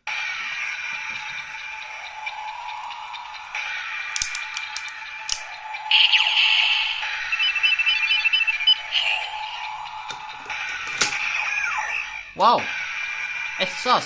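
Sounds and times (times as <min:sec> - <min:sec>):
electronic rising sweep: 0:00.1 - 0:12.4
short beeping tones: 0:06.0 - 0:09.2.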